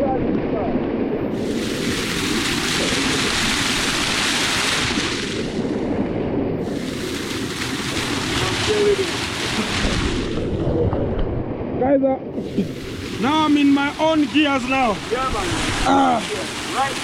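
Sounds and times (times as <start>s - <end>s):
waterfall rushing: 1.3s - 5.6s, 6.6s - 10.5s, 12.4s - 17.0s.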